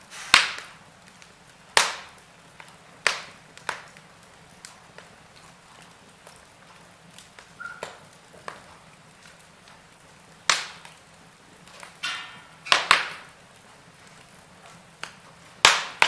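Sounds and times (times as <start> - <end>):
short hiss: 0.0 - 0.8
sharp pops of fire: 0.0 - 16.0
wood fire crackling: 0.0 - 16.0.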